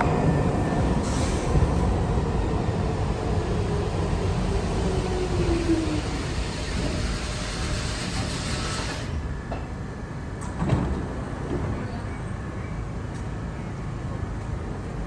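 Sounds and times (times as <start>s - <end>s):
subway train rumble: 0.0s - 15.0s
hiss: 1.0s - 1.7s.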